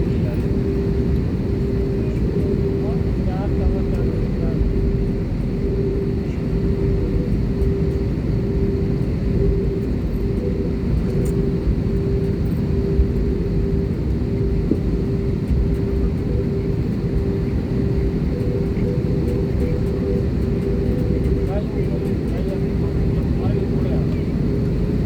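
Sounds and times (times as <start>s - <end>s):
jet engines rumbling in cabin: 0.0s - 25.0s.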